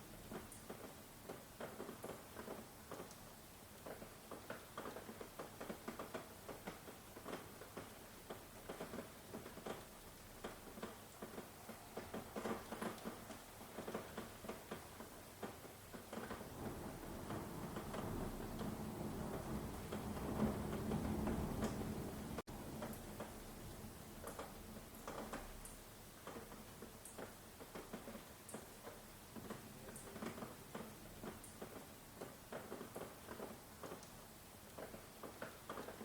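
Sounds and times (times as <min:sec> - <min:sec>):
rain dripping on hard surface: 0:00.0 - 0:36.0
low thunder rumble: 0:16.5 - 0:22.5.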